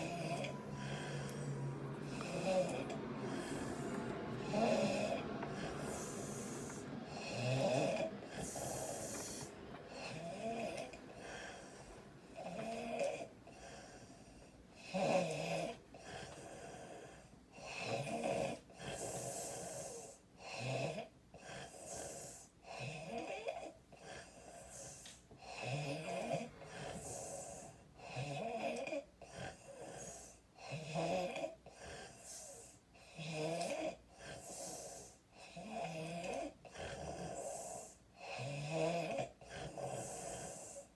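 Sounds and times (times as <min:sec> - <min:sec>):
woman snoring loudly: 0:00.0 - 0:11.8, 0:12.4 - 0:14.0, 0:14.8 - 0:17.0, 0:17.6 - 0:21.0, 0:25.5 - 0:31.5, 0:33.1 - 0:40.8.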